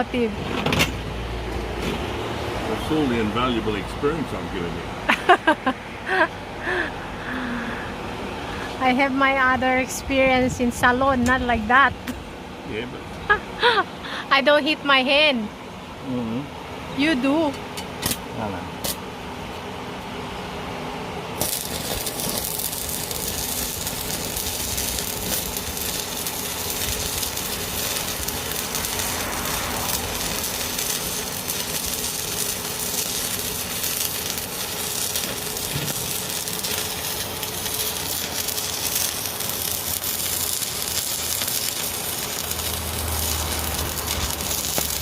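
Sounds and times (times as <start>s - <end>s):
arc welding crackle: 0.0s - 4.8s, 21.3s - 45.0s.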